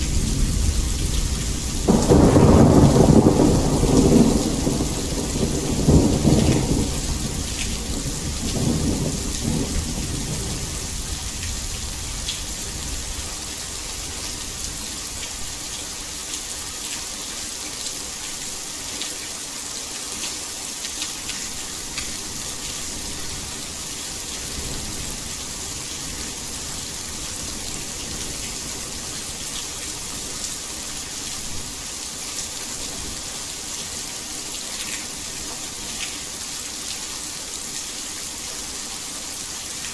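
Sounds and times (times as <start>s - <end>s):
thunder rumble: 0.0s - 12.2s
heavy rain falling: 0.0s - 39.9s.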